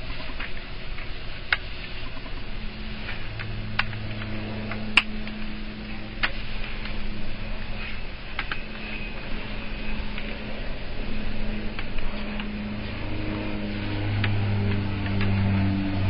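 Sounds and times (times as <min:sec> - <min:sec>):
steady low hum: 0:00.0 - 0:16.0
sharp plastic clicks: 0:08.3 - 0:08.6.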